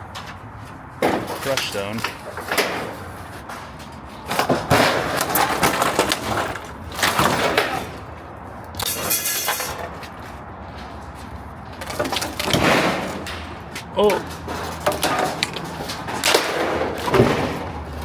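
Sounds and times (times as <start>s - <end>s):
rattling clatter: 1.0s - 8.1s, 8.7s - 11.2s, 11.8s - 18.0s
crashes of breaking material: 4.3s - 8.1s, 11.9s - 13.6s.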